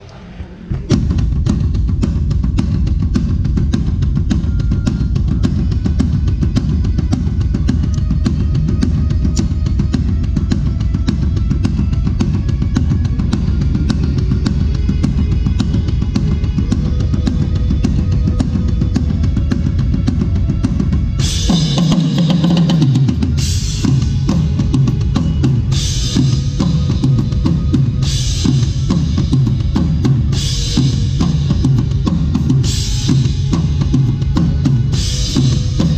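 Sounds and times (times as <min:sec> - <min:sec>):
drum kit groove: 0:00.0 - 0:35.9.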